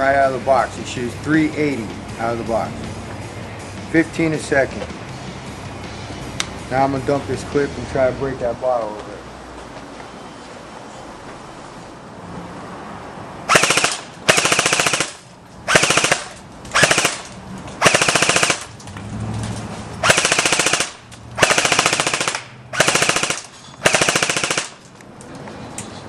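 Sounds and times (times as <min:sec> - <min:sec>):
airsoft gun firing bursts: 0:13.5 - 0:18.7, 0:20.0 - 0:24.8.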